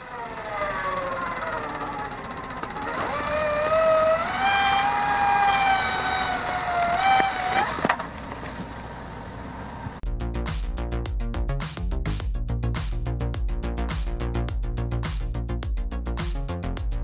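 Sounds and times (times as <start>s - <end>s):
high-pitched motor whine: 0.0s - 7.9s
rhythmic music: 10.0s - 17.0s.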